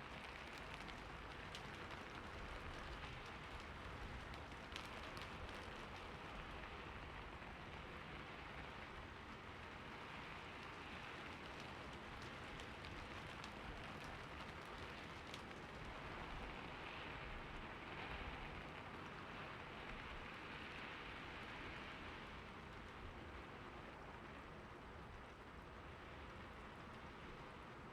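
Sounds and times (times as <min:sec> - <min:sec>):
rain pattering on a surface: 0:00.0 - 0:27.9.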